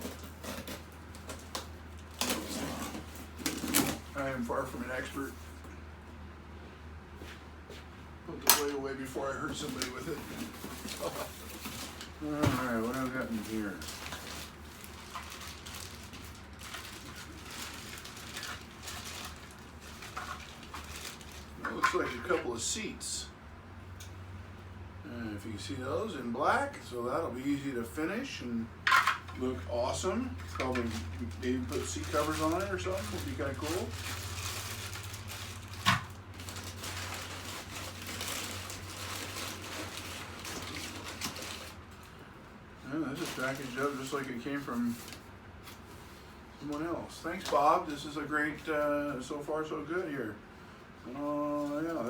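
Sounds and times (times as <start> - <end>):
packaging rustling and crinkling: 0.0 - 5.6, 9.4 - 22.3, 30.2 - 42.3, 42.9 - 49.2, 51.1 - 52.0
low steady hum: 0.0 - 52.0.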